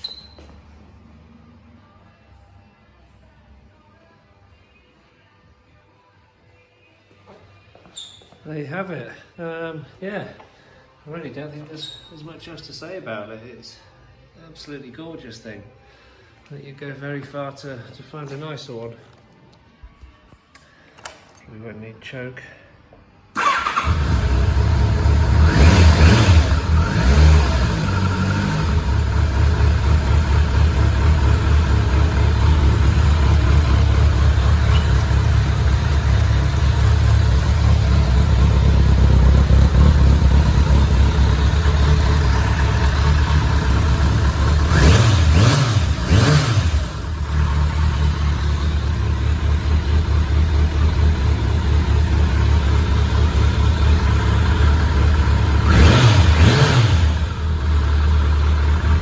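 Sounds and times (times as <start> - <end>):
motorcycle engine starting and idling: 23.4 - 59.0.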